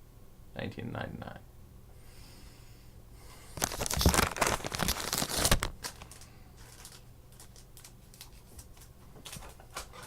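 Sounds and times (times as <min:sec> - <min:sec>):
plastic packaging crinkling: 0:03.6 - 0:10.0.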